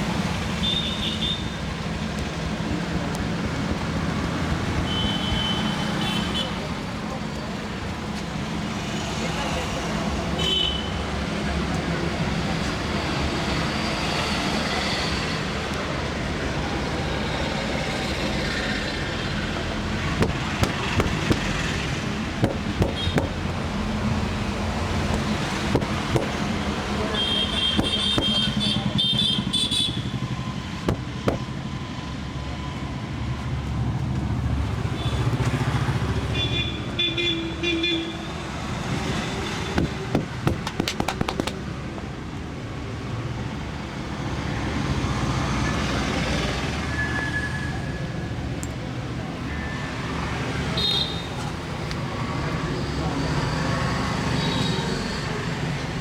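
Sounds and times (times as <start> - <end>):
road traffic rumble: 0.0 - 56.0
hands tapping slaps: 20.2 - 21.6, 22.4 - 23.4, 39.8 - 41.6.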